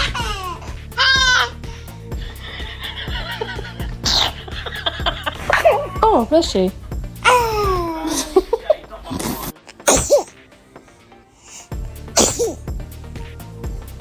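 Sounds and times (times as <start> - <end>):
faint background music: 0.0 - 14.0
baby sneezing: 4.0 - 4.3, 9.7 - 10.4, 11.4 - 12.7.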